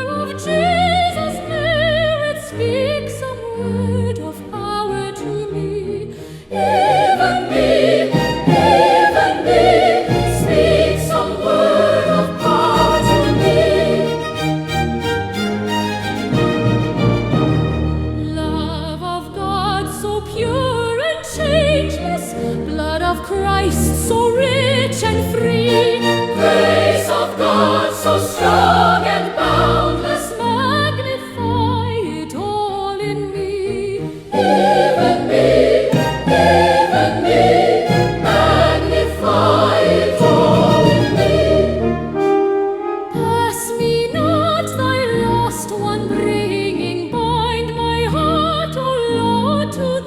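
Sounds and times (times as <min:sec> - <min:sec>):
choir singing a hymn: 0:04.4 - 0:17.9, 0:21.4 - 0:42.4
sustained instrumental accompaniment: 0:04.7 - 0:18.6, 0:25.2 - 0:31.0, 0:34.0 - 0:43.3.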